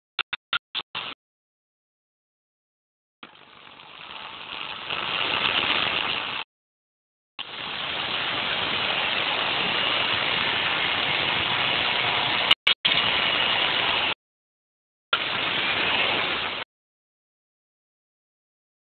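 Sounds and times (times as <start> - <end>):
sharp clicks: 0.2 - 1.2.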